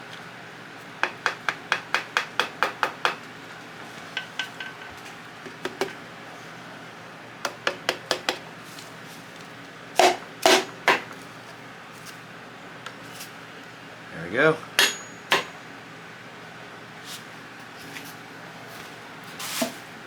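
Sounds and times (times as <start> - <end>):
piston hammered into cylinder: 14.8 - 15.6.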